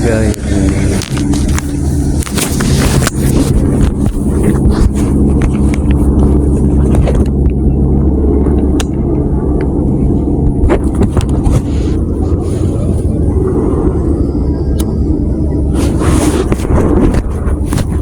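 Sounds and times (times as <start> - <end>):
engine running steadily: 0.0 - 18.0
rushing noise: 9.2 - 18.0.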